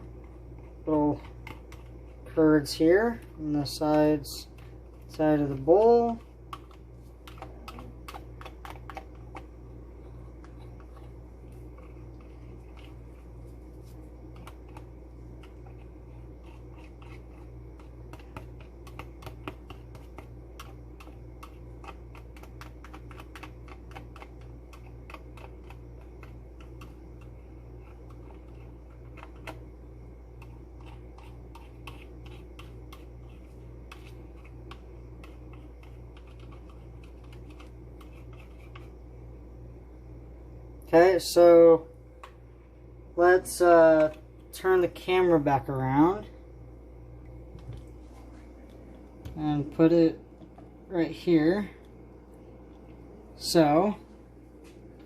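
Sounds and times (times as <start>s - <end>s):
steady low hum: 0.0s - 55.0s
fork scraping a bowl: 10.2s - 29.6s, 30.4s - 39.0s.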